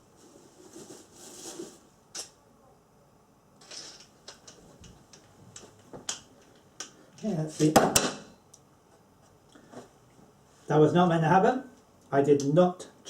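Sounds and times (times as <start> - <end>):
soft rustling of parts: 3.5 - 7.8, 8.4 - 10.8.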